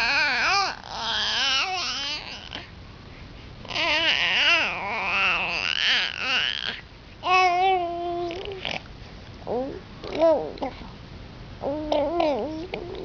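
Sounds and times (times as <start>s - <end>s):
baby babbling and fussing: 3.7s - 8.8s, 9.4s - 10.8s, 11.6s - 13.0s.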